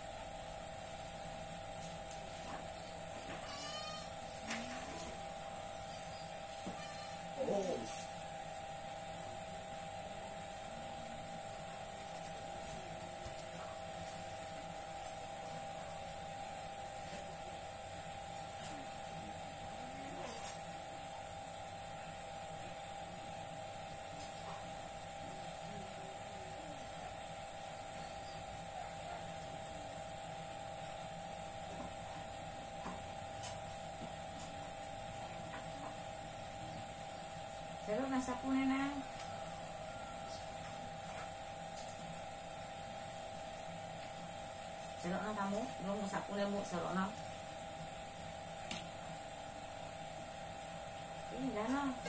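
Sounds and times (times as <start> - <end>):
steady two-tone hum: 0.0 - 52.0.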